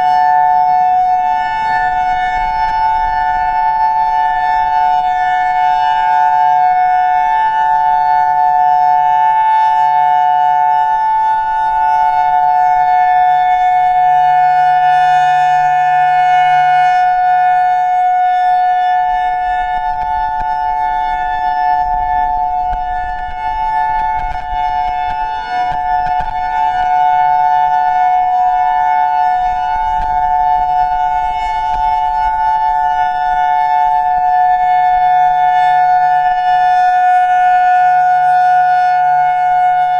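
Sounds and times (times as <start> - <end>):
two-tone warning siren: 0.0 - 39.9.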